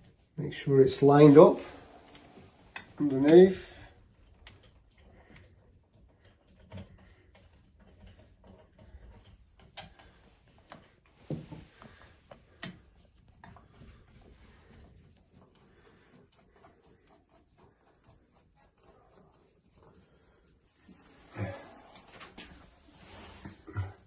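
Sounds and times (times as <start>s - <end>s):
clicks and knocks of plumbing fittings: 2.7s - 16.5s.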